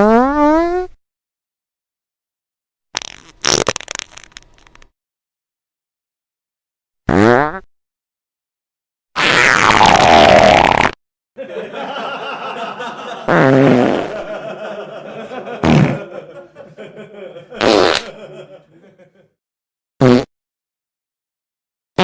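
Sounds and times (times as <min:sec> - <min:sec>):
fart sounds: 0:00.0 - 0:01.0, 0:03.0 - 0:04.9, 0:07.0 - 0:07.7, 0:09.2 - 0:11.0, 0:13.3 - 0:14.2, 0:15.6 - 0:16.0, 0:17.6 - 0:18.2, 0:20.0 - 0:20.3.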